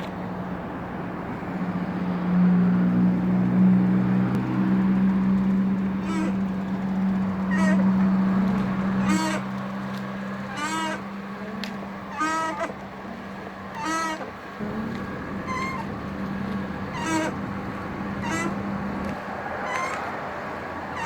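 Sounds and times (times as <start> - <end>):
squeaky creaking groans: 4.4 - 21.0
low hum: 14.6 - 19.2.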